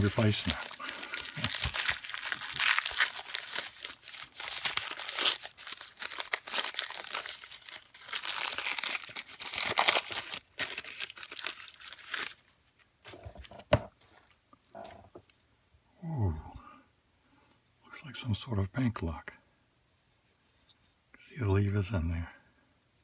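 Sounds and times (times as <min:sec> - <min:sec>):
packing material crinkling: 0:00.0 - 0:14.2.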